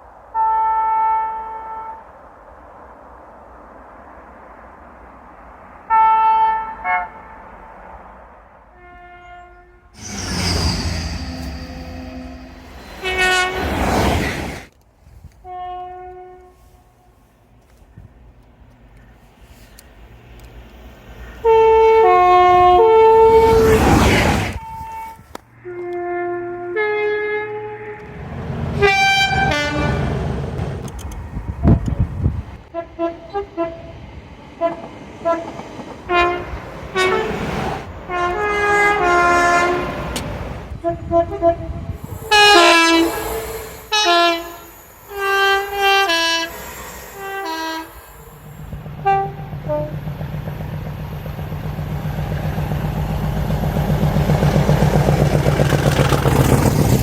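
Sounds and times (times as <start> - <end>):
train running drone: 0.0 - 57.0
two-tone train horn blasts: 0.3 - 2.1, 5.9 - 7.9, 8.7 - 14.2, 15.4 - 17.2, 21.4 - 23.8, 24.6 - 28.2, 28.8 - 30.2, 32.6 - 51.6.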